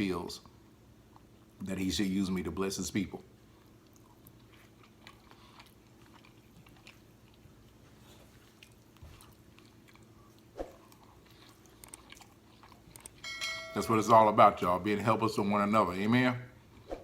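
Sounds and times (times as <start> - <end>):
person chewing: 3.4 - 13.4.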